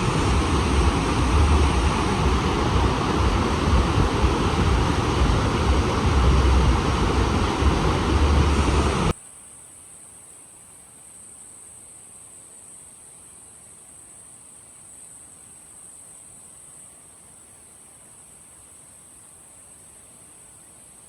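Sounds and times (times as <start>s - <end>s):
waterfall rushing: 0.0s - 9.1s
wind buffeting microphone: 0.0s - 9.1s
faint hiss: 0.0s - 21.0s.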